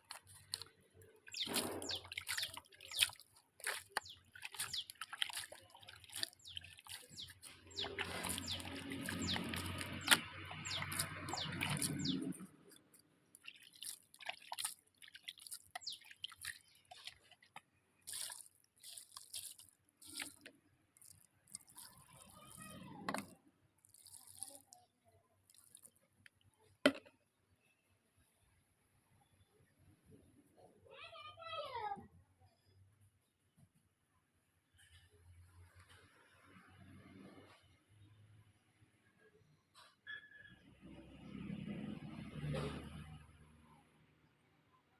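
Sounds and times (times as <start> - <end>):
running water: 0.0 - 24.7
water dripping and splashing: 0.0 - 24.8, 25.4 - 26.0.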